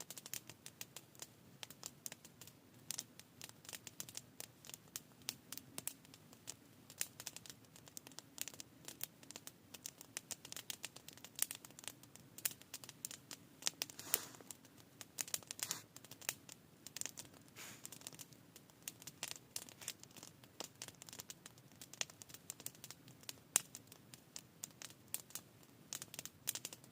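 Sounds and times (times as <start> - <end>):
campfire crackling and popping: 0.0 - 26.9.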